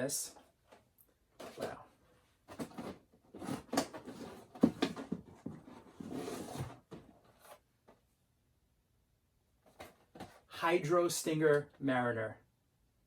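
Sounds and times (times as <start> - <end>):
plastic packaging rustling and clicking: 2.5 - 7.6.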